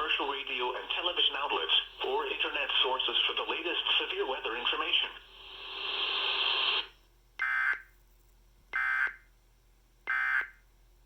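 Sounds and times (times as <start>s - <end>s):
hiss: 5.4s - 6.9s.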